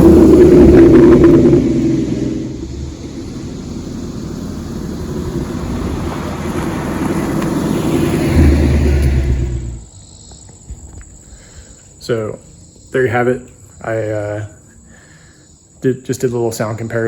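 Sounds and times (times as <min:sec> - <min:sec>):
car engine exhaust note: 0:00.0 - 0:10.0.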